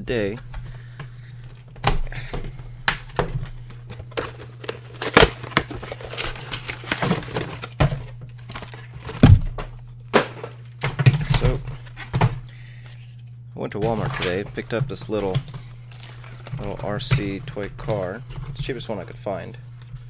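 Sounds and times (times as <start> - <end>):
steady low hum: 0.0 - 20.0
plastic packaging crinkling: 3.6 - 9.6, 15.9 - 17.4
plastic tearing: 3.8 - 9.4.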